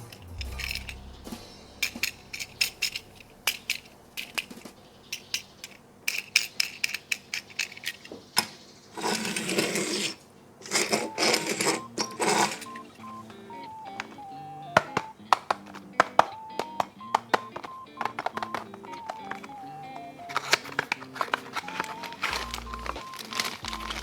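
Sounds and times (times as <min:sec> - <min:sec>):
plastic toy parts clicking: 0:02.3 - 0:12.9, 0:14.8 - 0:24.0
packaging rustling: 0:14.9 - 0:24.0.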